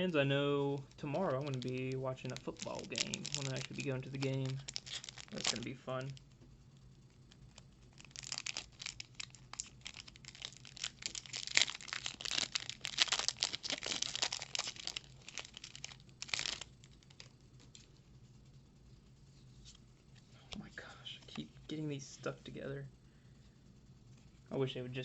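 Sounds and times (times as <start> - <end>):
foil wrapper tearing and crinkling: 1.3 - 6.2, 8.0 - 17.3.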